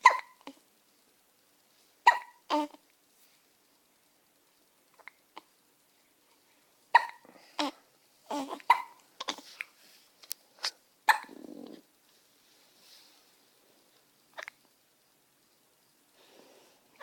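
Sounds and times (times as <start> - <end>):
baby sneezing: 0.0 - 0.4, 2.1 - 2.7, 7.0 - 7.7, 8.3 - 9.4
baby cooing and squeaking: 0.0 - 0.5, 2.1 - 2.8, 7.0 - 9.5, 11.1 - 11.8.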